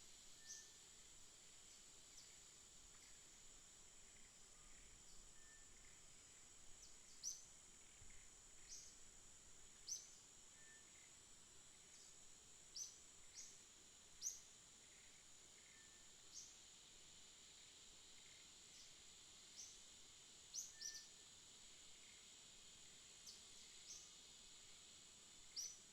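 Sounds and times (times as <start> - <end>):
steady high hiss: 0.0 - 25.9
small birds chirping: 20.5 - 21.1.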